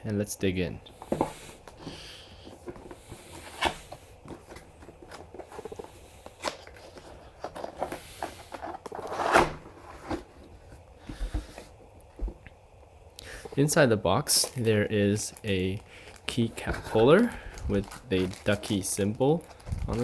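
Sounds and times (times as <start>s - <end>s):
cardboard box being opened: 1.1s - 12.4s
knocks scrapes and rustles: 2.5s - 11.7s.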